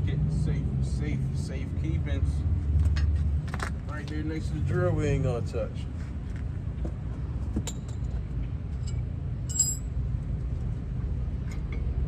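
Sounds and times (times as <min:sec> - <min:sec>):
metallic clinks of hand tools: 0:08.8 - 0:09.9.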